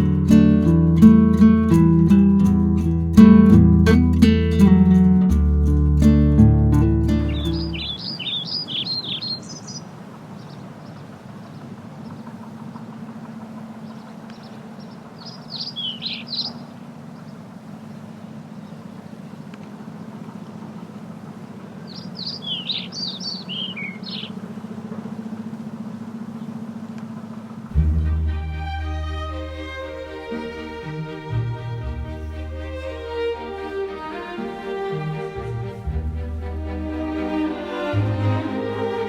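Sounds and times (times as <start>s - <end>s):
songbird singing: 0.0s - 39.0s
steady low hum: 16.5s - 39.0s.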